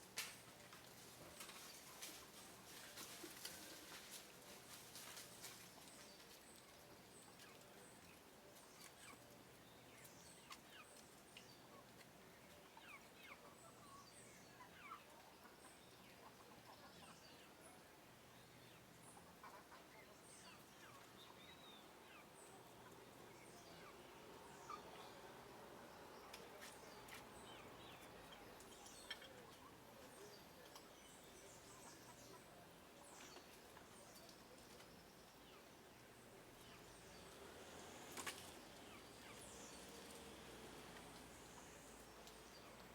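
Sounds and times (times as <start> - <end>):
low hiss: 19.9 - 42.9.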